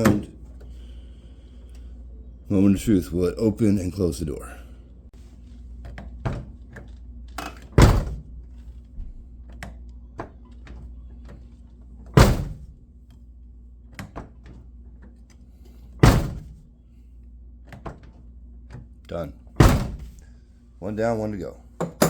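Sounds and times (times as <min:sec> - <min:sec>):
car door shutting: 0:07.8 - 0:08.3, 0:12.2 - 0:12.8, 0:16.0 - 0:16.6, 0:19.6 - 0:20.2.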